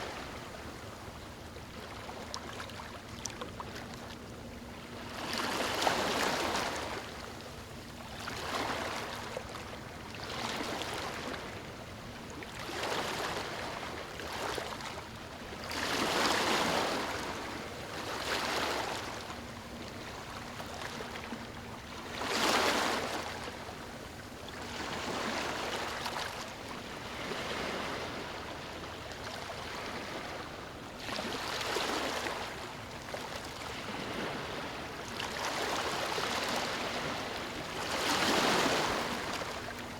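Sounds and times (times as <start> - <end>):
ocean waves breaking on beach: 4.8 - 7.2, 15.6 - 39.9.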